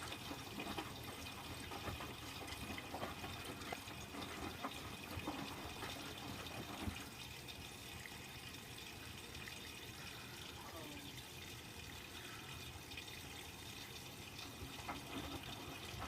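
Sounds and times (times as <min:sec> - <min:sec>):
water sloshing in washing machine: 0:00.0 - 0:16.0.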